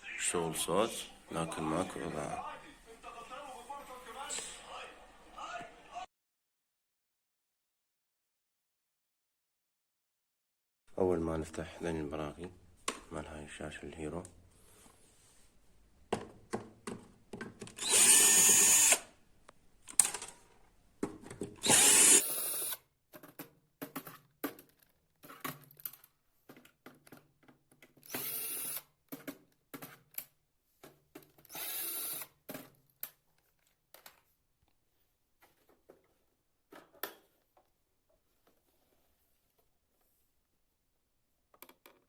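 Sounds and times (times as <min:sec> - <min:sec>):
power screwdriver whirring: 0:17.8 - 0:19.1, 0:21.6 - 0:22.8, 0:28.0 - 0:28.9, 0:31.4 - 0:32.3.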